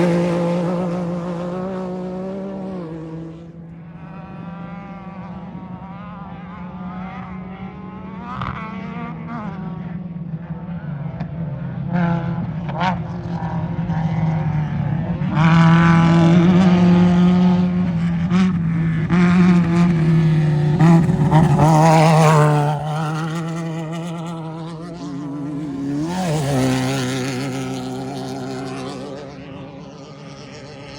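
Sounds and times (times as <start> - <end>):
race truck engine revving by: 0.0 - 3.6, 15.4 - 30.9
quieter engine rising in pitch: 15.4 - 30.9.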